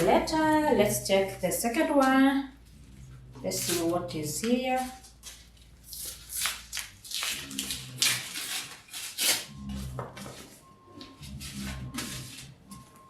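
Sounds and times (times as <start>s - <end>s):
paper envelope tearing: 5.2s - 9.5s.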